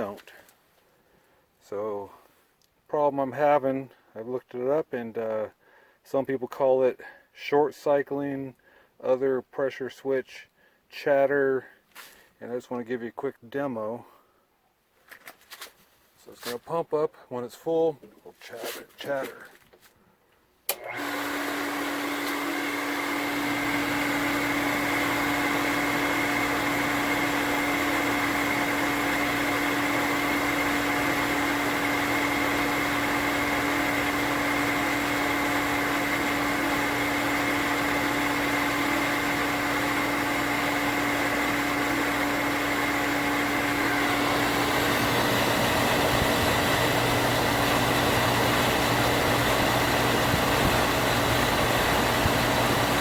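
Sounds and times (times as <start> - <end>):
water pump motor humming: 20.7 - 53.0.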